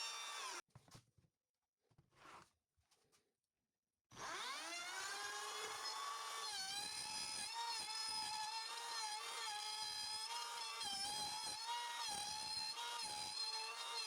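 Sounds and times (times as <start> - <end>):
wood router motor whine: 0.0 - 0.6, 4.2 - 14.0.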